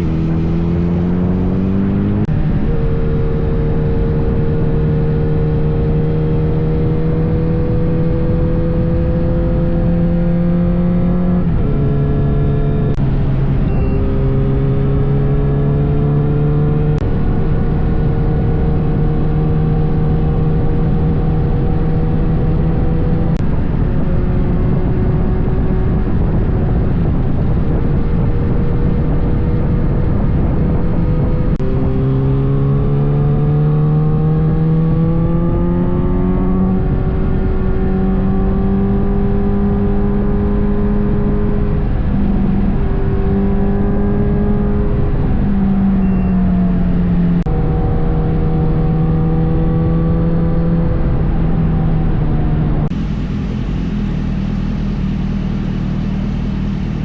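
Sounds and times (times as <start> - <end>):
wind rush: 0.0 - 4.9, 20.4 - 33.4, 50.8 - 57.0
motorcycle engine accelerating: 0.0 - 57.0.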